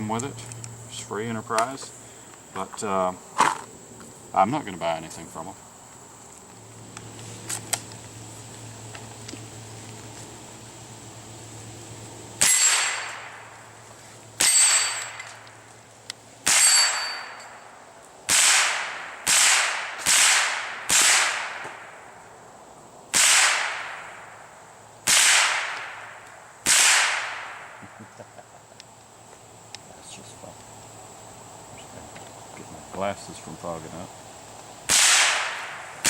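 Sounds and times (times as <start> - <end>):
rifle shots: 12.4 - 13.4, 16.4 - 17.4, 18.3 - 22.0, 23.1 - 24.3, 25.0 - 27.8, 34.9 - 36.0.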